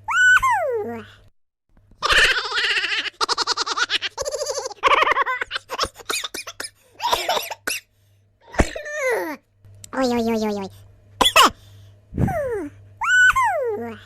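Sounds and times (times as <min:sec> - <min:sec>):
person laughing in high-pitched pulses: 0:02.0 - 0:06.1, 0:12.1 - 0:14.0.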